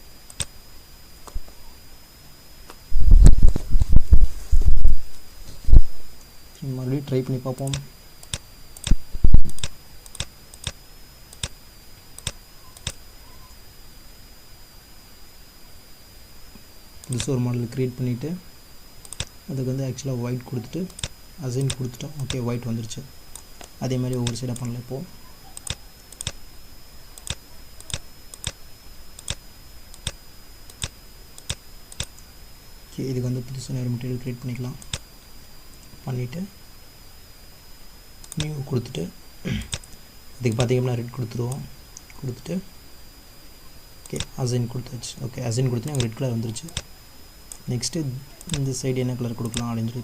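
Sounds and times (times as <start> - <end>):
faint high-pitched whine: 0.0 - 50.0
computer mouse clicks: 0.3 - 0.5, 7.5 - 11.6, 12.2 - 13.0, 17.0 - 17.4, 19.0 - 19.3, 20.9 - 22.4, 23.3 - 24.8, 25.6 - 26.4, 27.2 - 28.6, 29.2 - 32.3, 38.2 - 38.5, 39.7 - 40.8, 45.9 - 46.9, 48.4 - 48.7, 49.4 - 49.7
mouse and keyboard clicks: 7.6 - 11.6, 12.2 - 13.0, 25.6 - 26.4.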